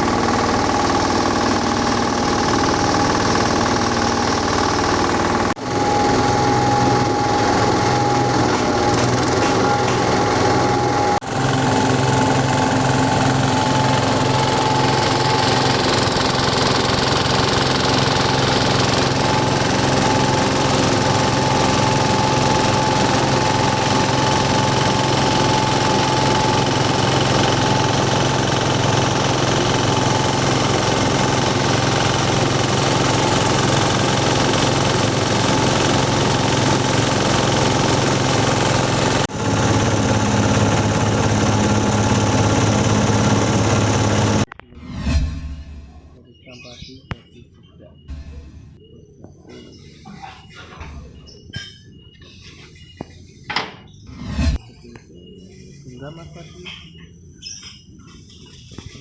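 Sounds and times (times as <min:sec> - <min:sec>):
grass chopper engine drone: 0:00.0 - 0:44.9.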